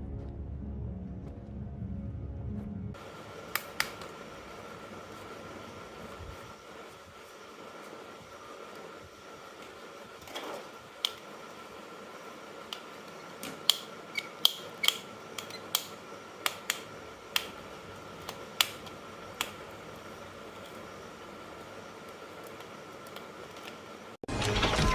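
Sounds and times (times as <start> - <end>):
faint steady hum: 0.0 - 24.2
plastic toy parts clicking: 12.7 - 17.6.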